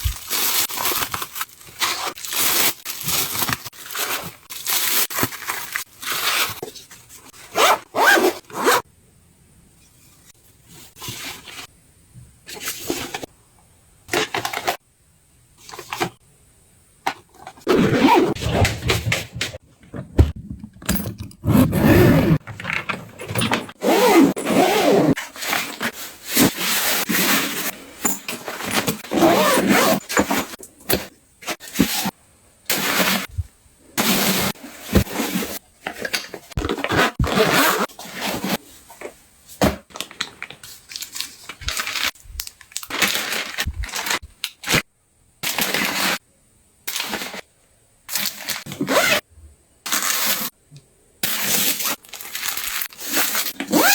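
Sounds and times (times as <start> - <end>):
bags rustling and scraping: 0.0 - 8.8, 17.6 - 33.4, 34.0 - 44.8, 45.4 - 46.2, 46.9 - 47.5, 48.1 - 49.2, 49.9 - 50.5, 51.2 - 53.9.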